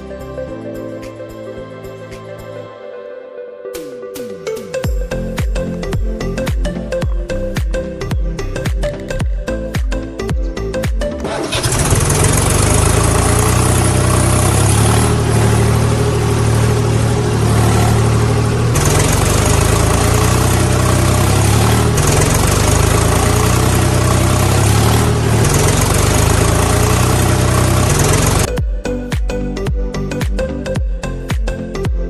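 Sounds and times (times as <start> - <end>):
heavy vehicle engine idling: 11.3 - 28.5.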